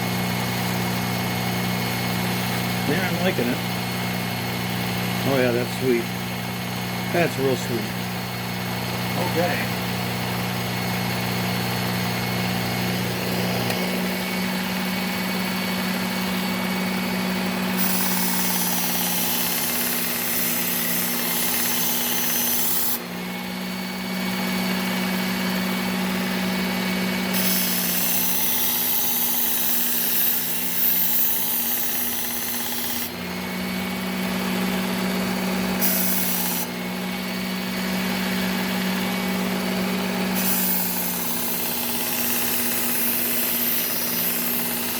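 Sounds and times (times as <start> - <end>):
belt sharpener motor hum: 0.0 - 44.9
knife blade grinding on belt: 17.8 - 23.0, 27.3 - 33.2, 35.8 - 36.7, 40.3 - 44.9.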